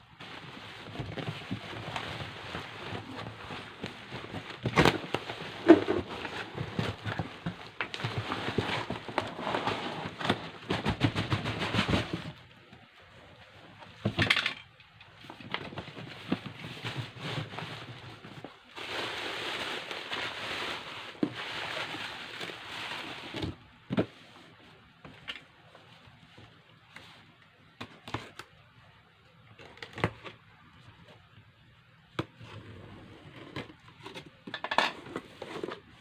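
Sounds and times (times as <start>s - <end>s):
packaging crackling and rustling: 0.1s - 12.6s, 15.2s - 23.7s.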